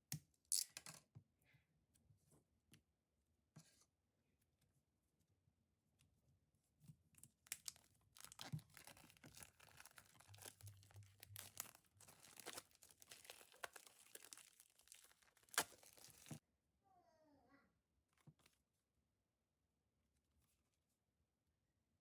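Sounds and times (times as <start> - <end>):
packaging tearing and crinkling: 7.5 - 16.4.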